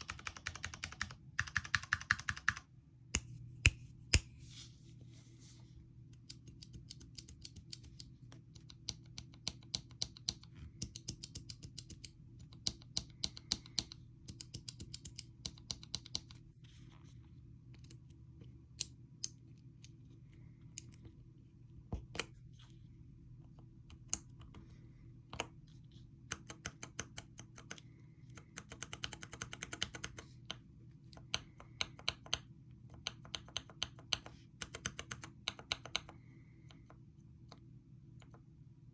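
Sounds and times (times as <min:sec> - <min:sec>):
mechanical keyboard typing: 0:00.0 - 0:02.7, 0:06.2 - 0:16.4, 0:28.4 - 0:30.3, 0:31.3 - 0:36.2
faint low hum: 0:00.0 - 0:38.9.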